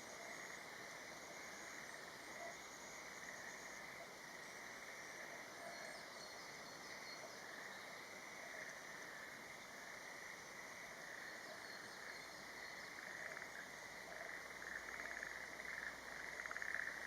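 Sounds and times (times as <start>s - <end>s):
insects calling: 0.0s - 17.0s
chorus of calling frogs: 6.9s - 17.0s.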